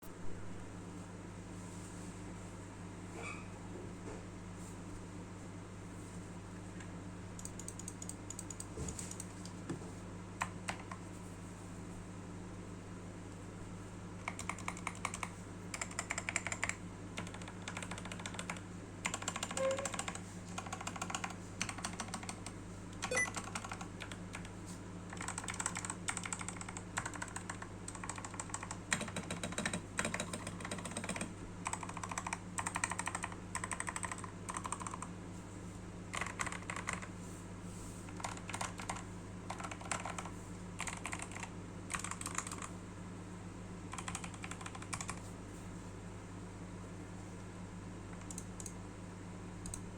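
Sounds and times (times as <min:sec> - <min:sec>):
steady low hum: 0:00.0 - 0:49.9
mechanical keyboard typing: 0:07.4 - 0:09.6, 0:10.4 - 0:11.0, 0:14.2 - 0:35.1, 0:36.1 - 0:37.1, 0:38.1 - 0:42.8, 0:43.9 - 0:45.2, 0:48.1 - 0:48.8.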